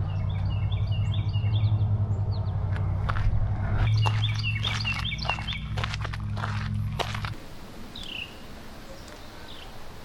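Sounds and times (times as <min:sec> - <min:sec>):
bird chirping: 0:00.0 - 0:03.0, 0:03.8 - 0:07.2, 0:07.9 - 0:09.8
footsteps on a trail: 0:02.6 - 0:07.4.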